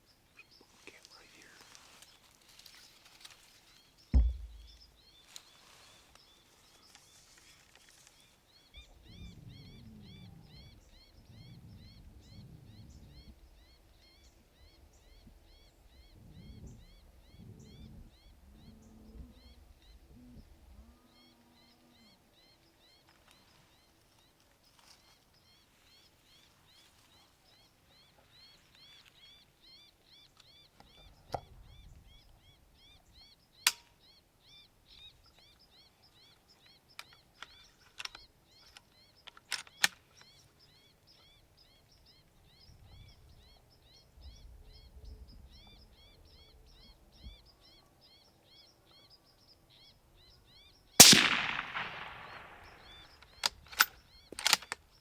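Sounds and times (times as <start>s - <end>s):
sharp clicks: 4.2s - 4.9s, 33.7s - 33.9s, 51.0s - 54.9s.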